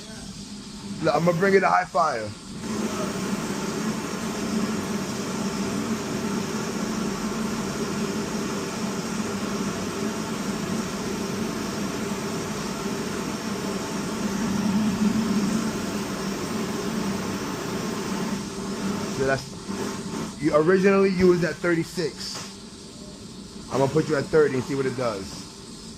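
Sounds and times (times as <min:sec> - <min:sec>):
gas burner and blower rushing: 0:00.0 - 0:25.9
low hum: 0:13.7 - 0:18.6.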